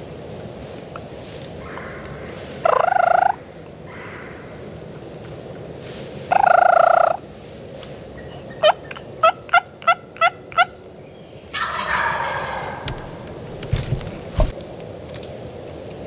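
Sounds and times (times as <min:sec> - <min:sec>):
turkey yelps: 0:11.5 - 0:14.5
turkey gobbling: 0:11.5 - 0:14.6.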